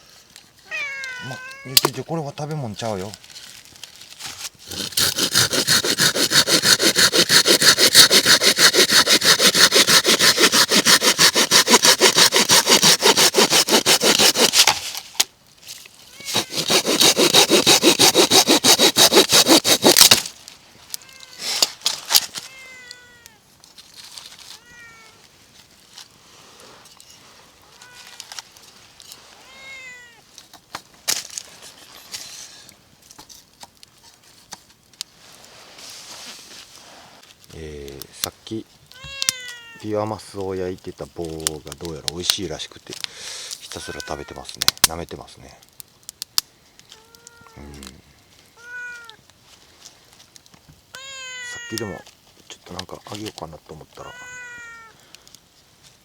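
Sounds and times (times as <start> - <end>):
cat meowing softly: 0.6 - 1.9, 20.9 - 21.5, 22.4 - 23.4, 24.5 - 25.2, 27.6 - 28.3, 29.4 - 30.3, 38.9 - 39.9, 43.7 - 44.6, 46.9 - 48.0, 48.6 - 49.3, 50.9 - 52.1, 54.0 - 55.0
hand saw cutting wood: 4.6 - 15.2, 16.3 - 20.3.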